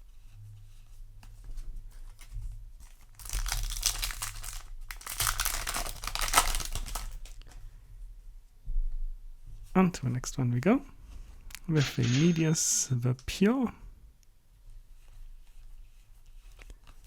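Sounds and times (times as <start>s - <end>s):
foil wrapper tearing and crinkling: 2.8s - 7.4s.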